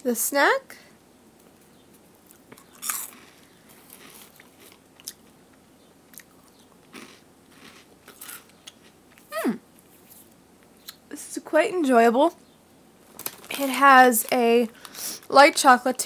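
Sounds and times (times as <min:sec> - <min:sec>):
crunchy snack chewing: 0:02.2 - 0:05.4, 0:06.1 - 0:10.1.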